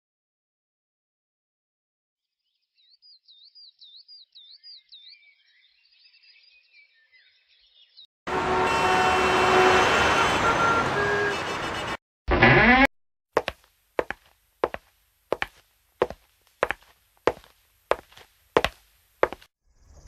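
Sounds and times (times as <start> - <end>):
city street traffic noise: 8.3 - 12.0.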